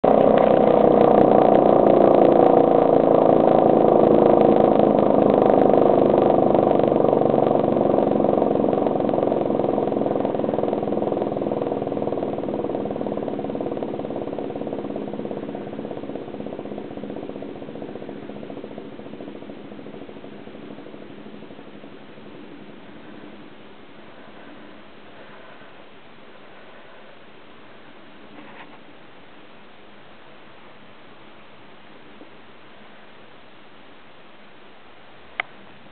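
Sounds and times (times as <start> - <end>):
air raid siren winding down: 0.0 - 24.5.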